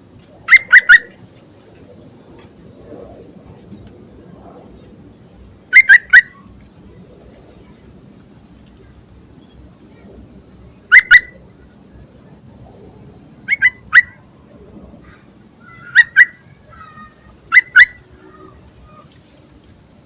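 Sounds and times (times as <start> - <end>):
bird calling sharp notes: 0.5 - 1.2, 5.7 - 6.5, 10.9 - 11.4, 13.4 - 14.2, 15.6 - 19.1.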